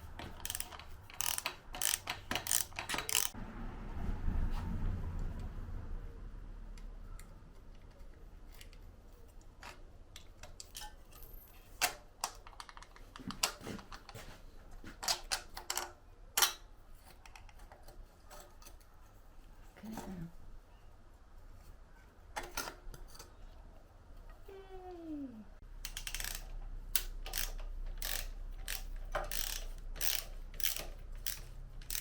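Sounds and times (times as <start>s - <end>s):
hand tools clicking and tapping: 0.0s - 3.4s, 9.4s - 18.9s, 25.8s - 32.0s.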